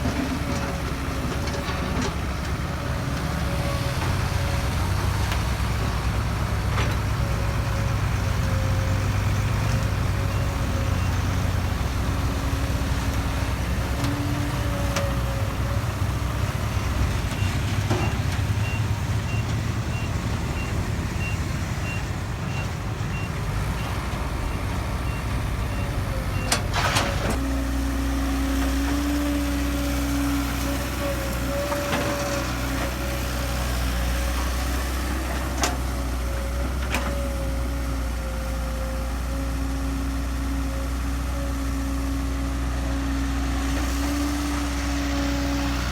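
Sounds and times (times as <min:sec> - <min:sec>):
diesel machinery engine running: 0:00.0 - 0:45.9.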